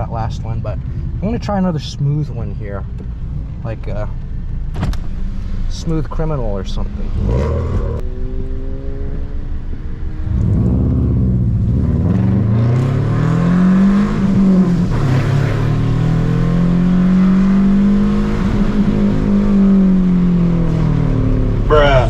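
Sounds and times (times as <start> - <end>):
car engine revving: 0.0 - 22.0
wet tyres hissing: 14.8 - 16.0.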